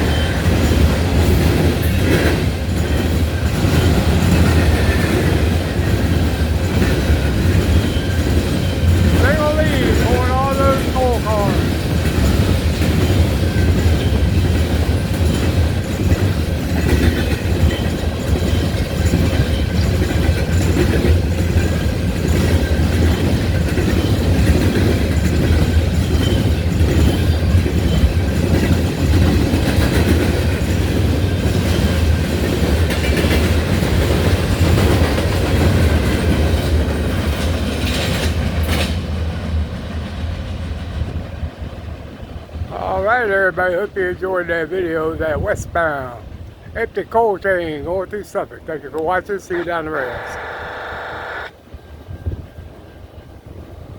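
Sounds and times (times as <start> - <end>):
freight cars rattling: 0.0 - 38.8
train wheels clacking over rail joints: 0.0 - 43.9
low train rumble: 0.0 - 53.9.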